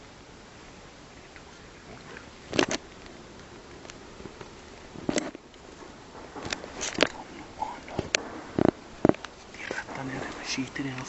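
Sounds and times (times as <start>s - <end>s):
low steady background noise: 0.0s - 11.0s
sharp clicks and snaps: 6.4s - 11.0s.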